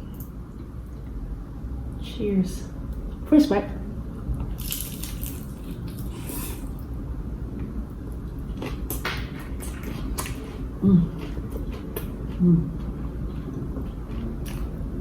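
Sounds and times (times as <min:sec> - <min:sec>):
mouth chewing crispy food: 0:04.5 - 0:06.8, 0:09.6 - 0:14.8.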